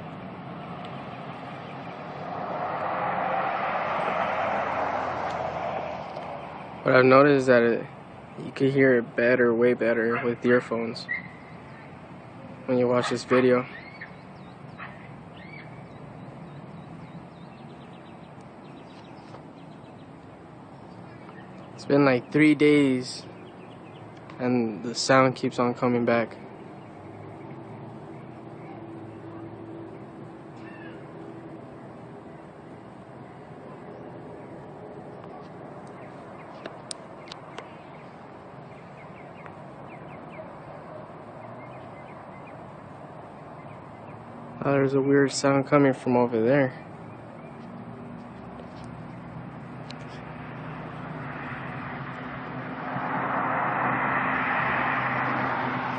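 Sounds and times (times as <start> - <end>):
low outdoor noise in the sky: 0.0 - 55.9
small birds chirping: 8.0 - 52.6
faint bird chirps: 13.6 - 20.2, 26.8 - 31.1.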